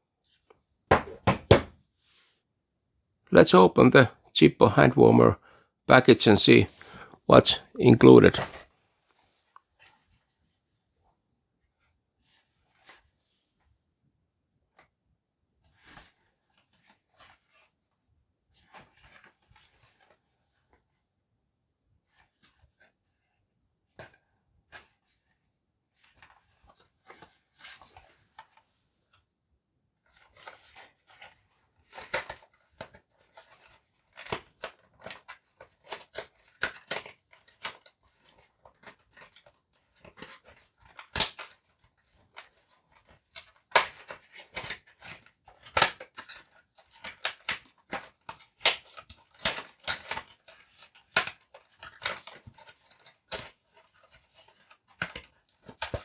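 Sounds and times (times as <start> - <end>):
cardboard and plastic crackling: 30.1 - 56.0.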